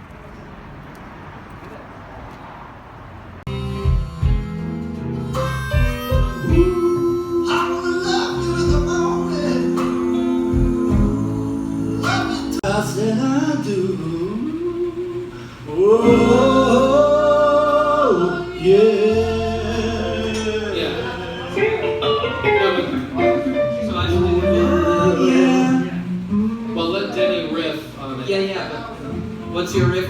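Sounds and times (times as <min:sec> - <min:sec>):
deep low notes: 0:03.5 - 0:15.1, 0:16.1 - 0:26.9
guitar: 0:03.5 - 0:30.0
man singing: 0:06.4 - 0:27.4.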